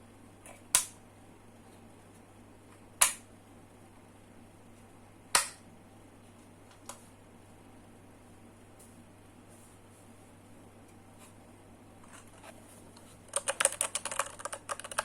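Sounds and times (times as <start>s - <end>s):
mechanical keyboard keystrokes: 13.3s - 15.0s.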